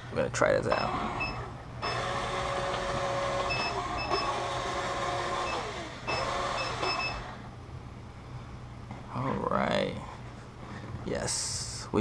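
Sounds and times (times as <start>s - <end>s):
robot vacuum motor whirring: 1.8s - 7.2s.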